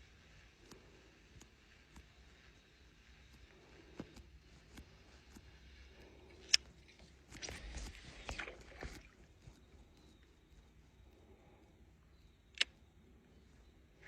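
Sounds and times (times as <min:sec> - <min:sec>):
paddle splashing: 0:07.3 - 0:09.6.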